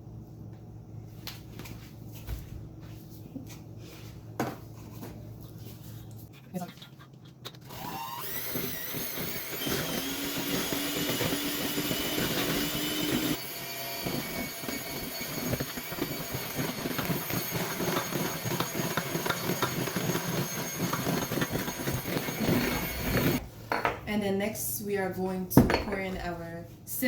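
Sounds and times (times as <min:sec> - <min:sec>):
electric mixer motor whine: 0:07.6 - 0:23.4.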